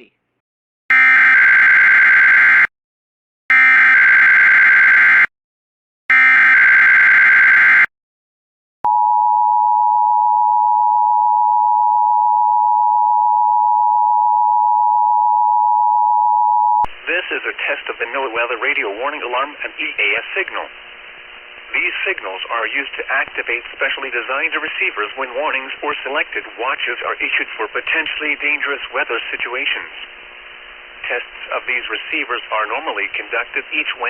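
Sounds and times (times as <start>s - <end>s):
piercing warning alarm tone: 0.9s - 2.7s, 3.5s - 5.3s, 6.1s - 7.9s.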